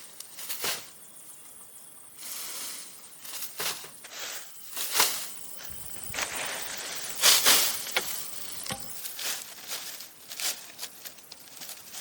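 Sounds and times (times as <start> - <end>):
low hiss: 0.0 - 9.5
bamboo scraping and rustling: 2.2 - 12.0.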